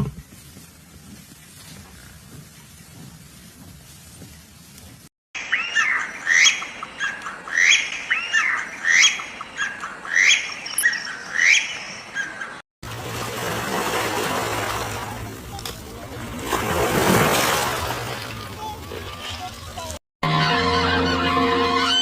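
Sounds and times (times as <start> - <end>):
bird squawking: 5.4 - 12.6.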